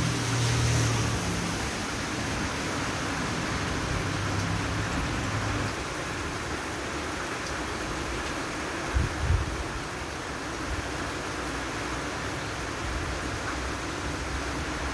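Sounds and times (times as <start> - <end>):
steady rain falling: 0.0 - 14.9.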